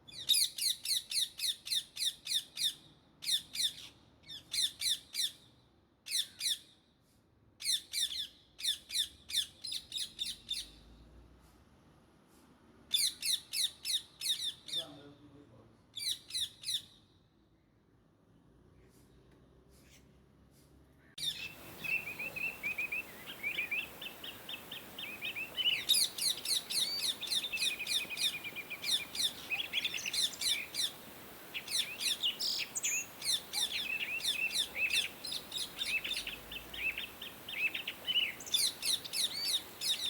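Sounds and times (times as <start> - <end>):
birds chirping: 21.2 - 40.0.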